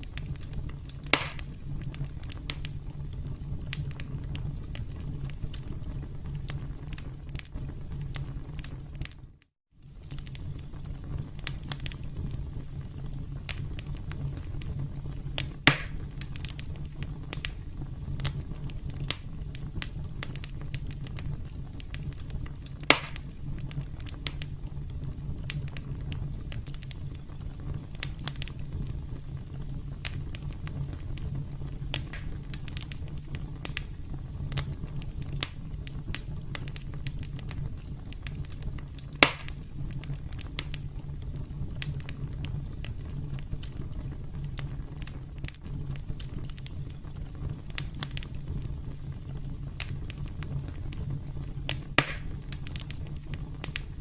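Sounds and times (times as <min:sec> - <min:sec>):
burning wood crackling: 0:00.0 - 0:54.0
campfire rumble: 0:00.0 - 0:54.0
loud fire pops: 0:00.0 - 0:54.0.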